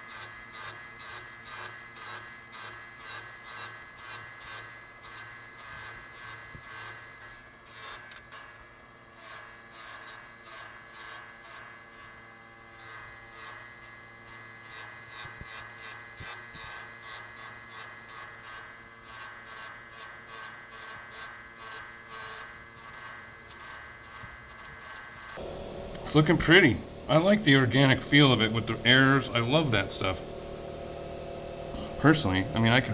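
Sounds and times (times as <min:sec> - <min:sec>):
ring rasping against wheel: 0:00.0 - 0:25.4
deburring wheel whining: 0:00.0 - 0:25.5.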